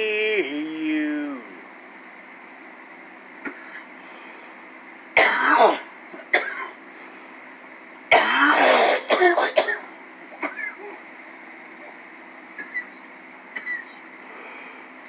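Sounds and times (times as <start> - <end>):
man coughing: 3.4 - 3.8, 5.2 - 6.8, 8.1 - 11.0, 12.6 - 12.9, 13.6 - 13.9.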